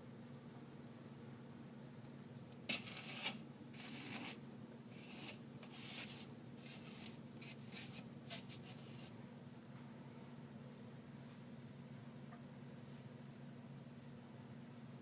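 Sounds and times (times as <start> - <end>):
scratchy rustles: 2.7 - 4.4, 5.0 - 9.1.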